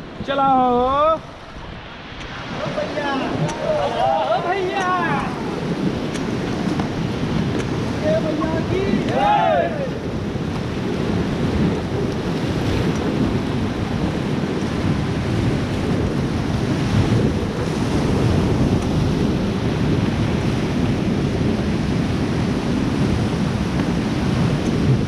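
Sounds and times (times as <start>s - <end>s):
river water rushing: 0.0s - 15.8s
wind buffeting microphone: 0.0s - 25.0s.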